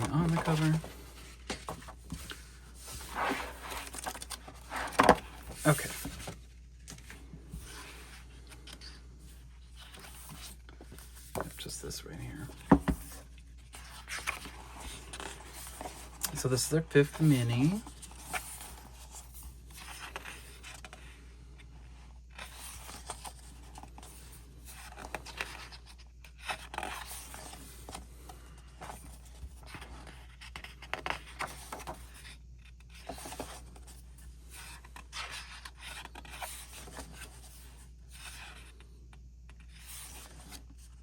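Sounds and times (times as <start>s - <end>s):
paper pages turning: 0.0s - 11.6s, 13.6s - 19.2s, 28.8s - 33.9s.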